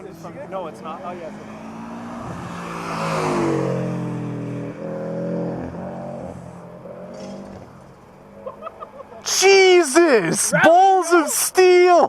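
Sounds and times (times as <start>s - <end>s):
car accelerating past: 0.2s - 8.6s.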